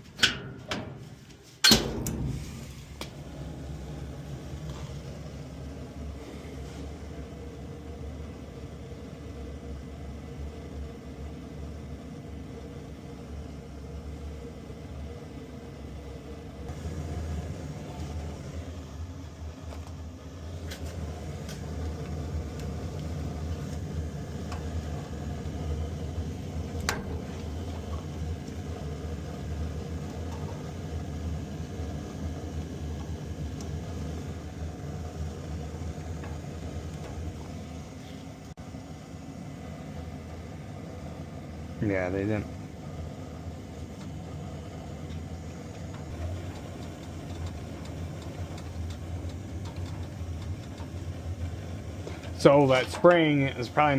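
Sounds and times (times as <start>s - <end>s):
furnace rushing sound: 0.0s - 7.7s, 39.3s - 53.9s
furnace motor hum: 0.0s - 53.9s.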